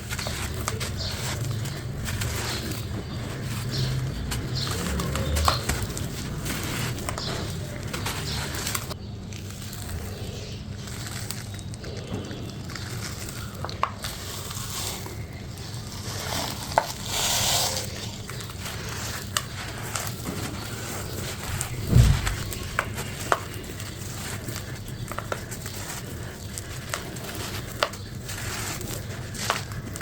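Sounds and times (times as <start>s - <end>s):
crumble block crunching: 17.9s - 30.0s.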